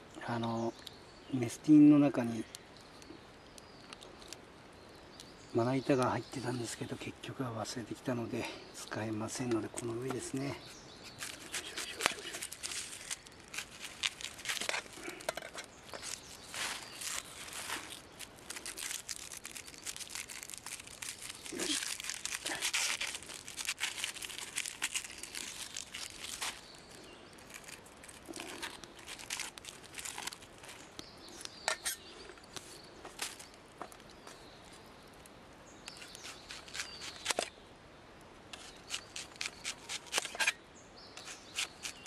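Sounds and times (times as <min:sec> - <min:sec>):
plastic packaging crinkling: 0:09.9 - 0:31.0.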